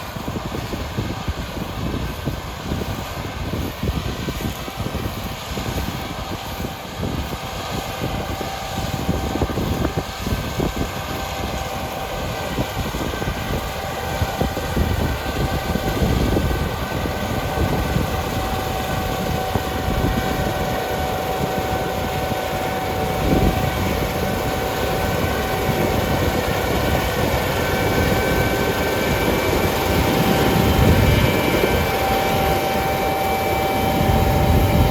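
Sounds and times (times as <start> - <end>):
combine harvester running: 0.0 - 34.9.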